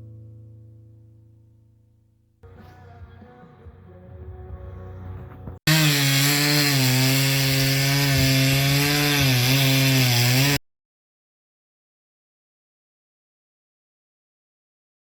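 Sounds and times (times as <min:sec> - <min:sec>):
battery saw cutting wood: 0:05.7 - 0:10.6.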